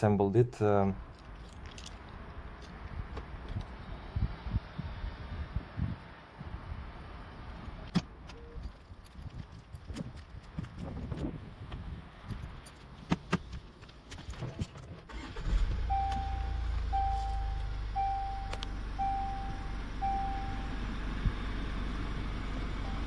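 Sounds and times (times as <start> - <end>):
car engine starting and idling: 15.0 - 23.0
car warning chime beeps: 15.2 - 21.0, 22.8 - 23.0.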